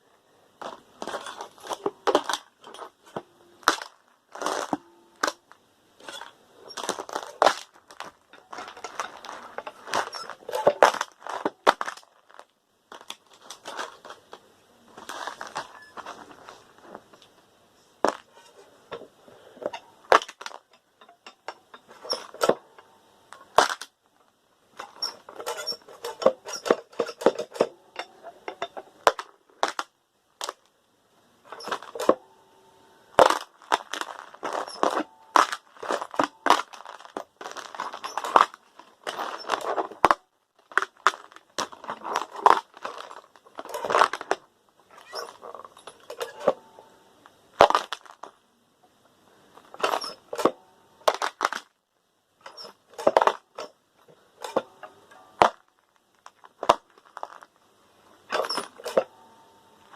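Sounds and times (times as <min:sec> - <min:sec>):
loose metal screws clattering: 0:06.0 - 0:11.9, 0:19.6 - 0:22.8, 0:24.8 - 0:29.8, 0:33.2 - 0:40.1.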